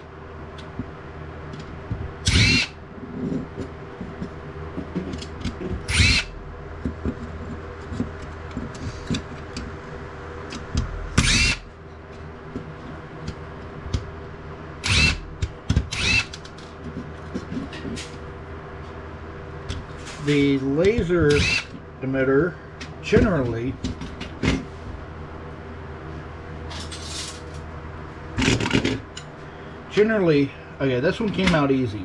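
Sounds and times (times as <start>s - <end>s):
power drill motor whine: 2.2s - 2.8s, 5.9s - 6.4s, 11.2s - 11.7s, 14.8s - 15.3s, 15.9s - 16.4s, 21.3s - 21.7s.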